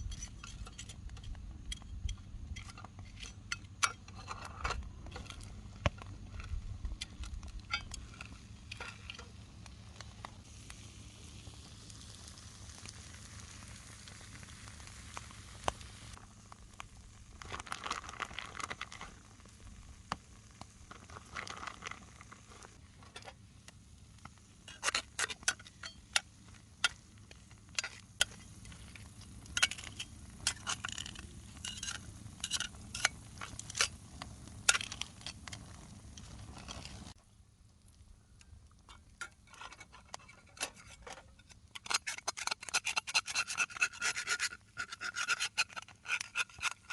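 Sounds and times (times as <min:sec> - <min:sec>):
campfire crackling: 0:00.0 - 0:46.9
food sizzling in a pan: 0:10.4 - 0:16.2.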